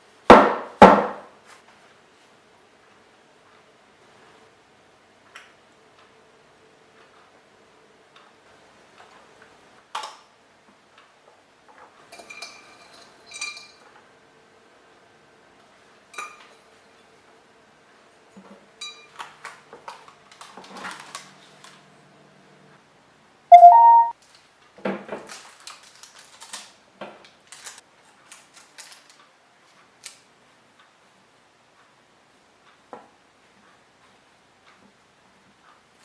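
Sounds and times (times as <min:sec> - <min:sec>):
kitchen utensils and dishes clinking: 0:12.1 - 0:13.8
rising two-pitch tone: 0:23.5 - 0:24.1.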